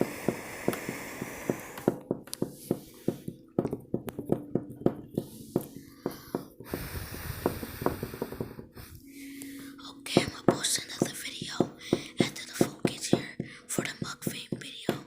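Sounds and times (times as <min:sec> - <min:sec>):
steady hiss: 0:00.0 - 0:03.3, 0:05.6 - 0:09.8.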